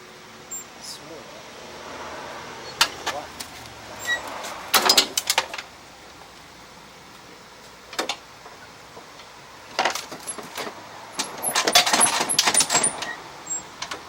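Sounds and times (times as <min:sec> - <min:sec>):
small metal parts rattling: 0:09.8 - 0:13.1.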